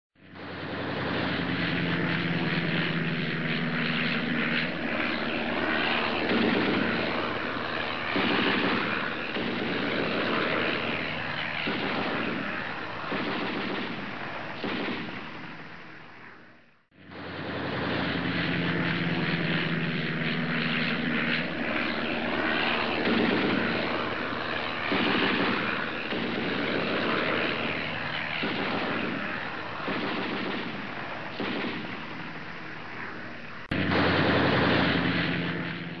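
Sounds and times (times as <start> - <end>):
propeller aircraft engines droning: 0.2 - 36.0.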